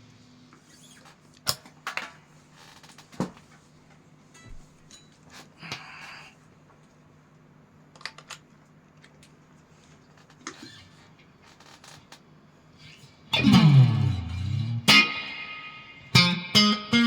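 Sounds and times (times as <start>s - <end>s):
faint amplifier hum: 12.1s - 17.0s.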